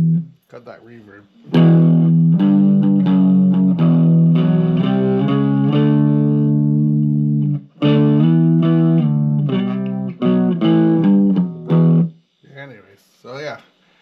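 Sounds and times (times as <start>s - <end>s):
electric guitar chords: 0.0s - 0.4s, 1.4s - 12.2s.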